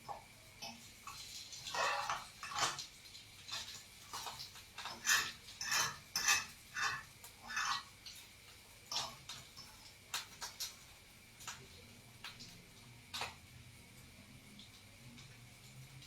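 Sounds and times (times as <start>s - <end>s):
utensil scraping dishware: 1.8s - 2.7s, 4.9s - 7.9s.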